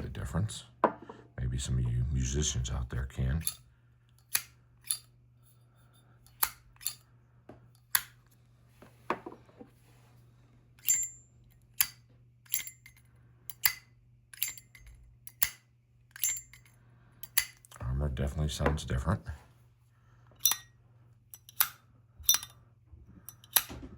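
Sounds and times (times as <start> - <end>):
lighter lid clicking open and shut: 11.8 - 16.6, 17.2 - 17.7.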